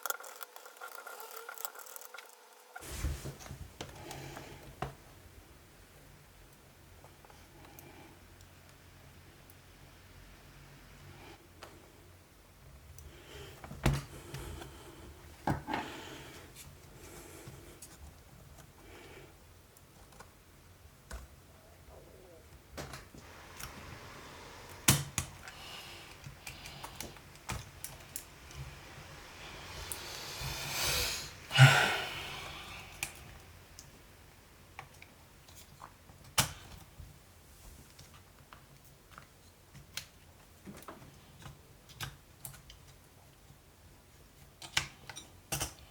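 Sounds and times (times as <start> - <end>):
light scraping and rustling: 0.0 - 3.6.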